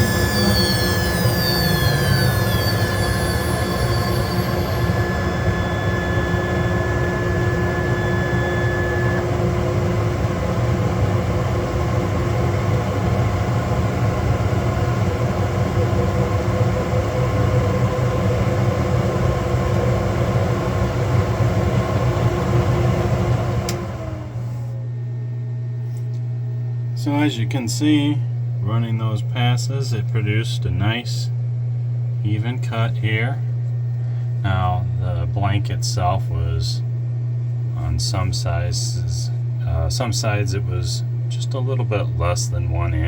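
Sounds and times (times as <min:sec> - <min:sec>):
machine spindle cutting wood: 0:00.0 - 0:09.2
thin high machine tone: 0:00.0 - 0:09.2.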